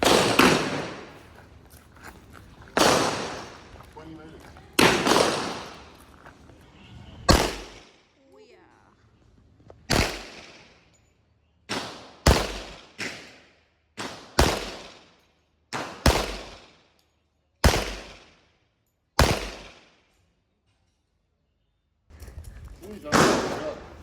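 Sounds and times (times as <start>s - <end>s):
gunshots with ringing echo: 0.0s - 1.2s, 2.8s - 3.9s, 4.8s - 6.0s, 7.3s - 8.0s, 9.9s - 10.8s, 11.7s - 13.4s, 14.0s - 15.1s, 15.7s - 16.8s, 17.6s - 18.4s, 19.2s - 19.9s, 23.1s - 24.0s.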